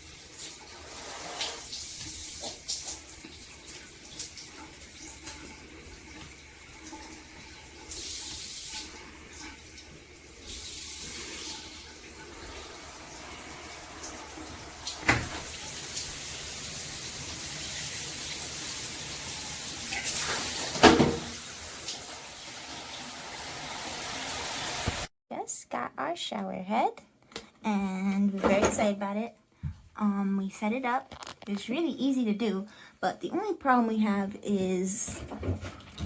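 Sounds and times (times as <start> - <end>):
water spraying from shower head: 0.0 - 3.1, 7.8 - 9.5, 10.4 - 25.1.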